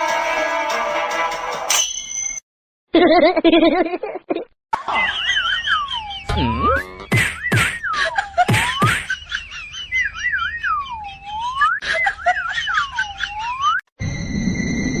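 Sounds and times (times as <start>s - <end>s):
swooping whistling with trills: 5.2s - 12.2s.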